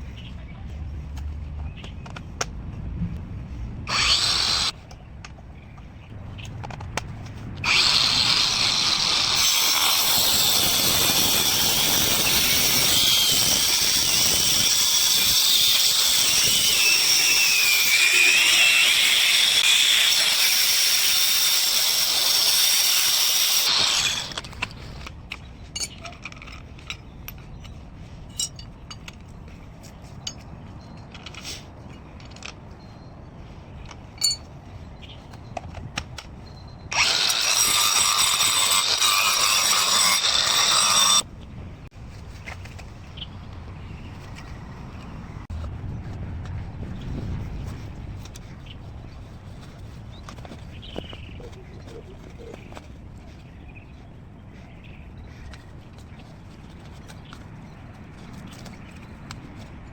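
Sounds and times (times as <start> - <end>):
angle grinder whining: 3.9 - 4.8, 7.6 - 24.6, 36.9 - 41.2.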